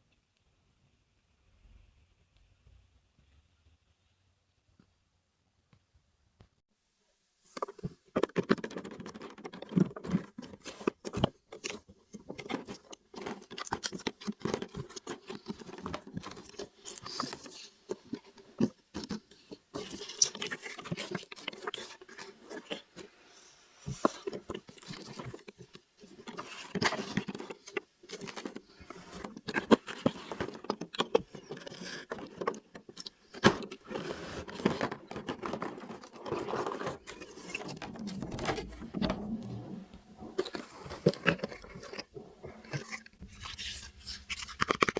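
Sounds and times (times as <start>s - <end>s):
packaging being handled: 24.2s - 44.9s.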